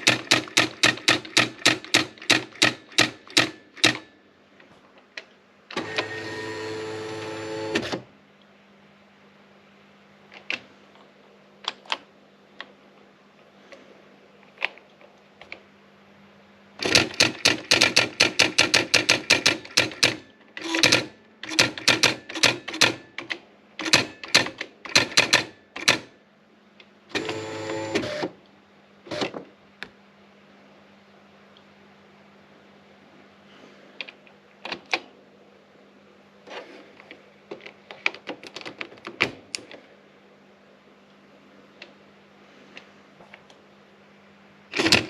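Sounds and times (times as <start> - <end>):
typewriter clattering strikes: 0.0 - 4.1, 16.8 - 26.1, 44.8 - 45.0
typewriter motor whir: 0.0 - 4.1, 5.7 - 8.0, 16.8 - 23.0, 27.1 - 28.3, 44.7 - 45.0.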